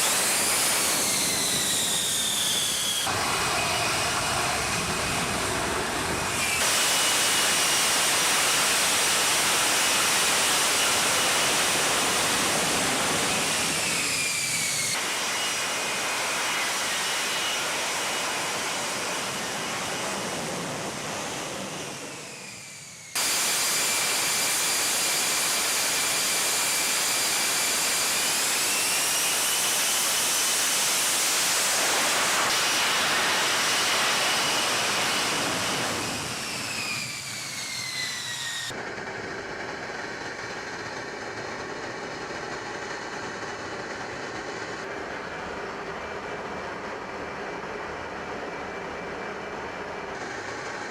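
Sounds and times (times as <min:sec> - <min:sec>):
jet engine roar and turbine whine: 0:00.0 - 0:50.9.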